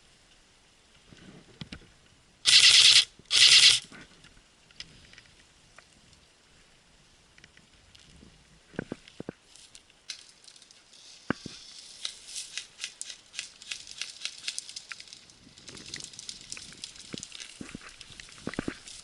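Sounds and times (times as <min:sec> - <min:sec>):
dry leaves and twigs crunching: 0:09.4 - 0:19.0.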